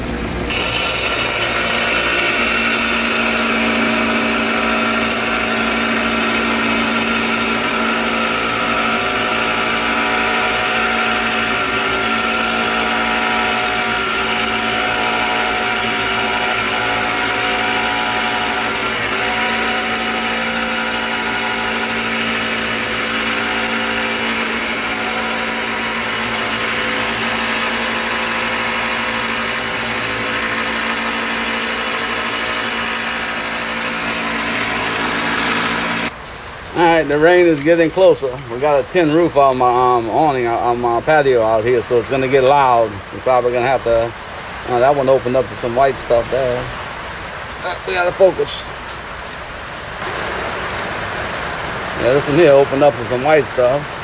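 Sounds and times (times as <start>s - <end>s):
electric grinder grinding rock: 0.4s - 36.2s, 52.0s - 53.9s.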